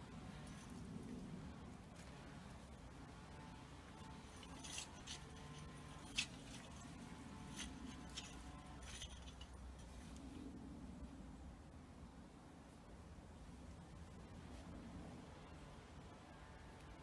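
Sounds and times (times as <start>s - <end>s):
low steady hum: 0.0s - 17.0s
light clicks and clinks: 7.6s - 9.9s.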